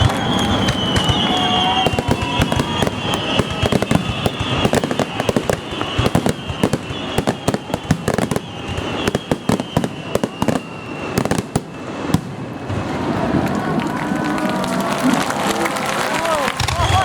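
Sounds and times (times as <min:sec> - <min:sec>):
high whistles gliding down: 0:00.0 - 0:12.2
fireworks bangs and crackles: 0:00.0 - 0:17.0.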